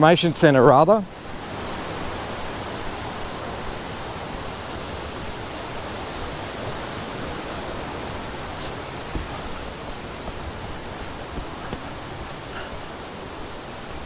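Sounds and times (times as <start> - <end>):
waterfall roaring: 0.0 - 14.0.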